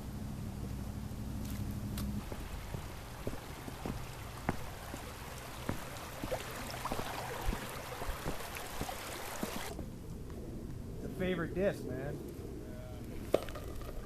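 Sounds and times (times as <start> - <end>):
wind rushing over microphone: 5.4 - 13.4.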